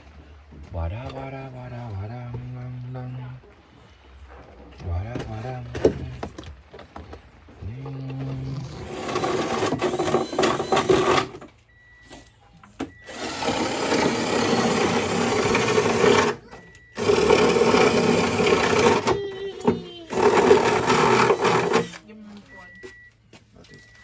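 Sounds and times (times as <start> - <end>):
handheld power tool running: 8.8 - 11.4, 13.1 - 16.4, 17.0 - 22.0.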